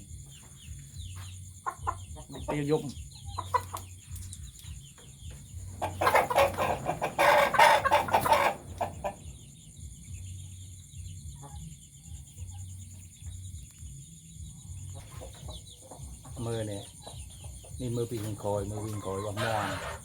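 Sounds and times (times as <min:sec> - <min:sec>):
chickens clucking and squawking: 0:00.0 - 0:20.0
low pulsing hum: 0:03.0 - 0:05.8, 0:08.6 - 0:15.2.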